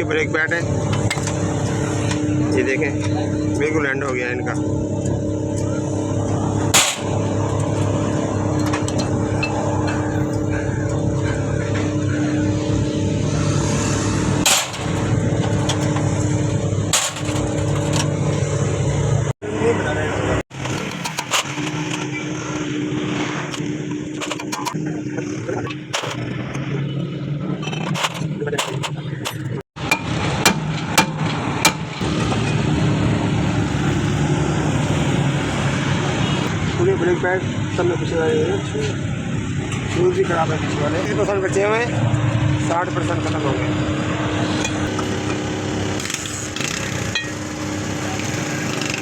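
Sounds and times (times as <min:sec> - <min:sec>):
low machine hum: 0:00.0 - 0:29.6.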